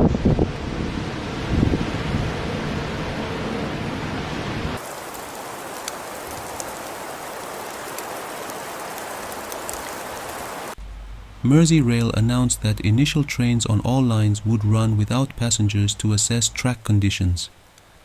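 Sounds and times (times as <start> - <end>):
wind rumbling on microphone: 0.0 - 11.3
rain-like hiss: 4.8 - 18.0.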